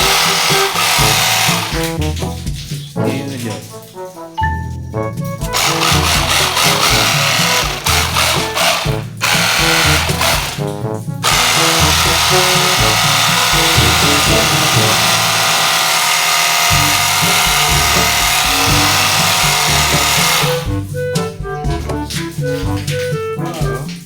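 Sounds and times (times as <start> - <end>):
loud steady hiss: 0.0 - 2.0, 11.3 - 20.7
music with stepping bass line: 0.0 - 2.9, 4.4 - 15.9, 16.6 - 24.0.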